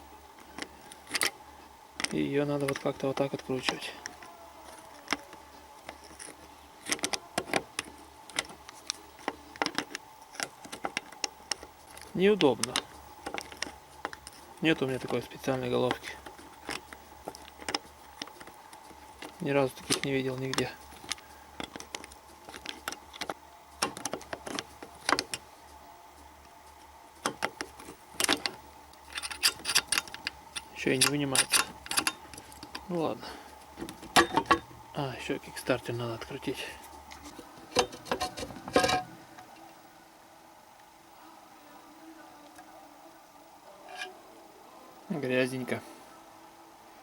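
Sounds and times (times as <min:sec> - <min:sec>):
metal tool clicking on bolt: 0:29.1 - 0:32.9.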